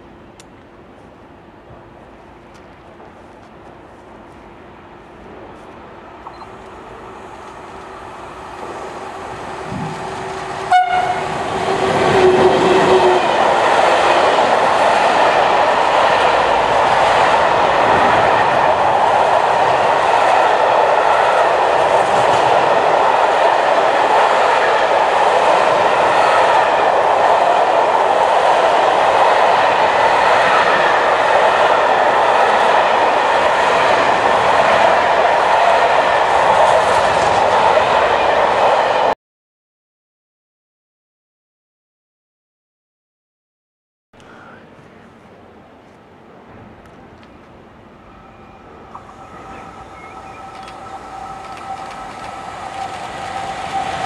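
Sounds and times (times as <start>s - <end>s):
train wheels rumbling on rails: 0.0s - 39.2s, 44.3s - 54.0s
train horn: 9.6s - 13.4s, 48.1s - 54.0s.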